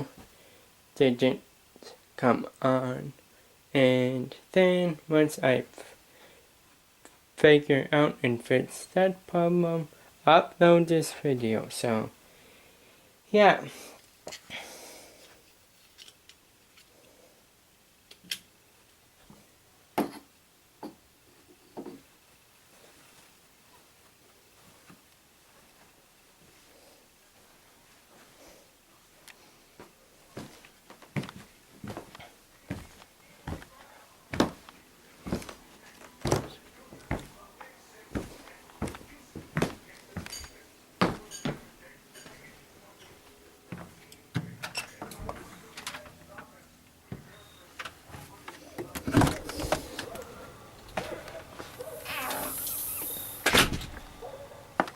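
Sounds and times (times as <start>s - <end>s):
light metallic ring: 41.3s - 41.5s.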